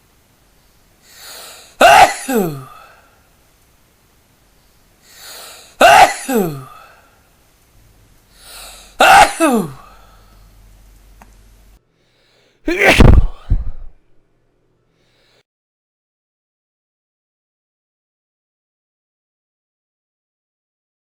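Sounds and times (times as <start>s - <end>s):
person sneezing: 1.8s - 2.9s, 5.8s - 6.9s, 9.0s - 10.0s, 12.7s - 14.0s
breathy intake: 5.1s - 5.8s, 8.3s - 9.0s.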